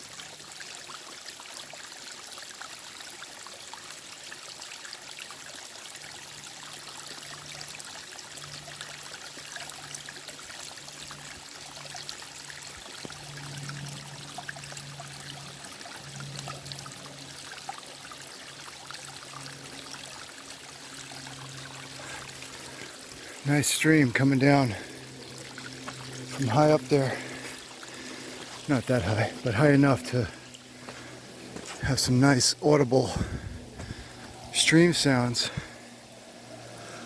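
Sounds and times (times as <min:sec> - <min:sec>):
stream running over rocks: 0:00.0 - 0:37.0
faint low drone: 0:12.2 - 0:37.0.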